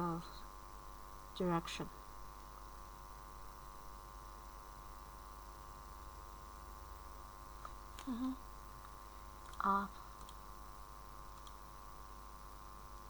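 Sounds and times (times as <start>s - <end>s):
electrical hum: 0.0s - 13.0s
murmured vocal sound: 8.1s - 8.4s.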